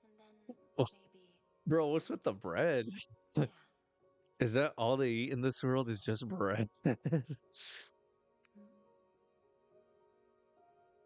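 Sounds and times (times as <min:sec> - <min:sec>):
faint background music: 0:00.0 - 0:11.0
person murmuring hmm: 0:01.9 - 0:03.5, 0:06.2 - 0:07.8.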